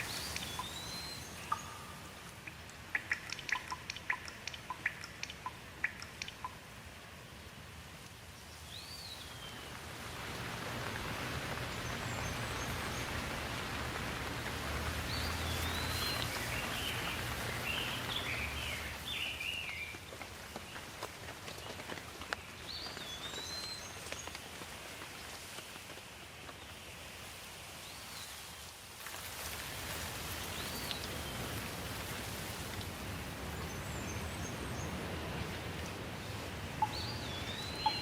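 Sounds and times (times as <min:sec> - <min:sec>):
birds chirping: 0:00.0 - 0:06.6, 0:14.8 - 0:20.1, 0:33.4 - 0:38.0
steady rain falling: 0:00.0 - 0:38.0.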